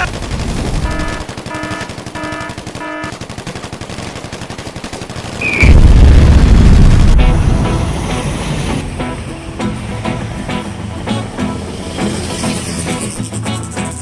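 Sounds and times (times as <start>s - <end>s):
rapid machine-gun fire: 0.0s - 7.4s
short horn-like beeps: 0.8s - 3.1s
loud low rumble: 5.6s - 11.0s.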